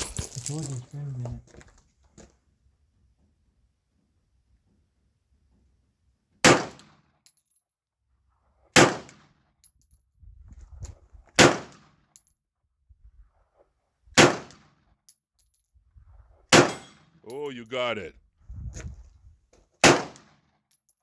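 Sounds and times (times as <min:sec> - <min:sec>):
pistol shots with short echo: 0:06.5 - 0:06.8, 0:16.6 - 0:17.0.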